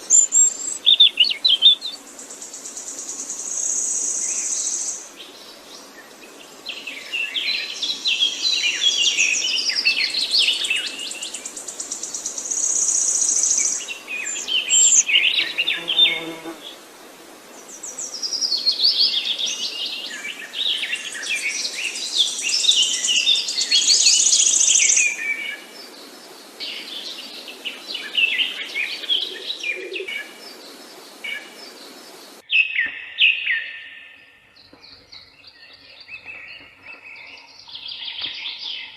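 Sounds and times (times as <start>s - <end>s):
songbirds singing and chirping: 0.0s - 16.8s, 17.5s - 38.9s.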